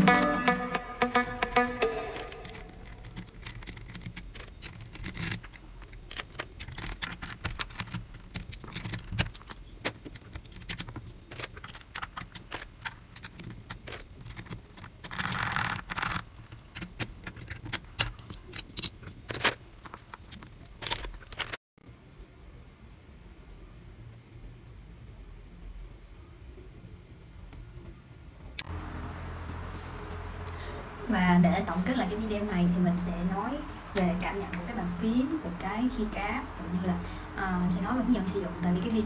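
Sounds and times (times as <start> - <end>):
mechanical keyboard clicking: 2.1 - 21.6.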